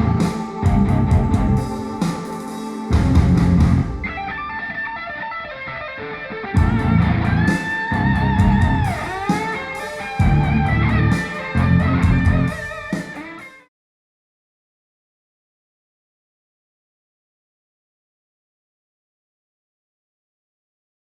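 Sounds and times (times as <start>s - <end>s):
heavy bass: 0.0s - 2.0s, 2.9s - 4.3s, 6.6s - 9.3s, 10.2s - 12.6s
bending guitar notes: 0.0s - 13.6s
rock music over speakers: 0.0s - 13.6s.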